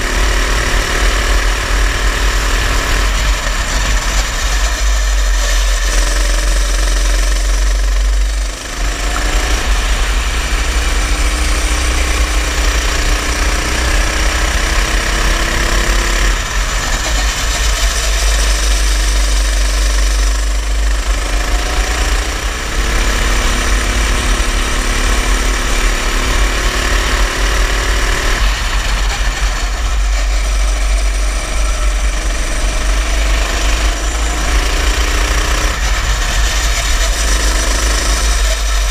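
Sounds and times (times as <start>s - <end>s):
go-kart engine revving: 0.0s - 38.9s.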